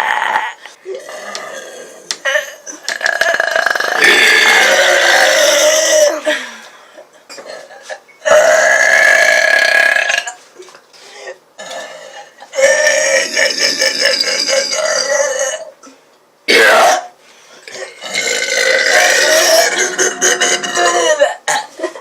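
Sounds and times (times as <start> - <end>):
woman belching: 0.0 - 6.3, 8.3 - 10.4, 12.6 - 15.7, 17.8 - 21.7.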